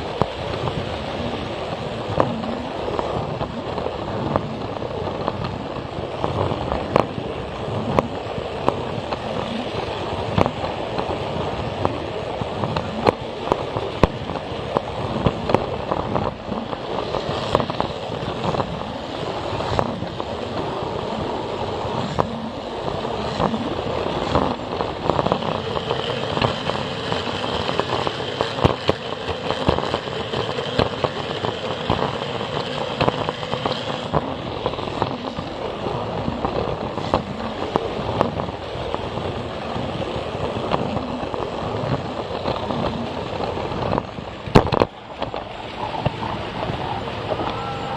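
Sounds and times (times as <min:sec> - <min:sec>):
wheels clicking over track joints: 0:00.0 - 0:47.9
thin high whine: 0:42.2 - 0:47.9.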